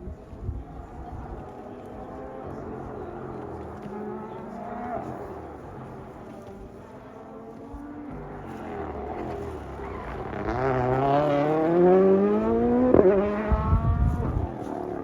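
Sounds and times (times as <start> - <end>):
rally car engine accelerating: 0.1 - 15.0
exhaust popping: 8.0 - 15.0.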